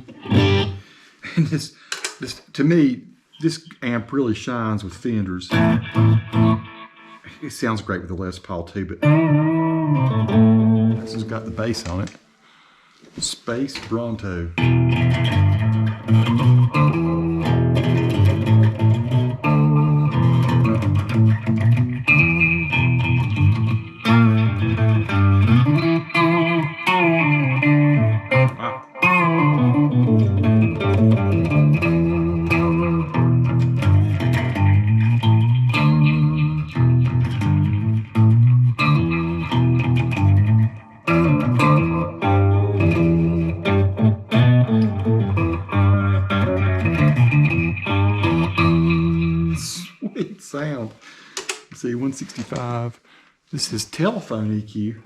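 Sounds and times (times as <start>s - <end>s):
electric guitar notes and chords: 0.0s - 1.0s, 5.5s - 7.4s, 9.0s - 12.0s, 14.6s - 50.0s.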